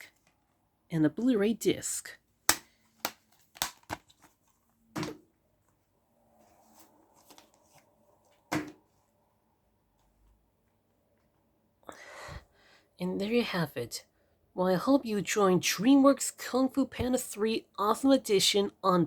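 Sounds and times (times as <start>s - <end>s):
plastic cases clicking: 2.5s - 4.3s
soft rustle: 5.5s - 9.2s.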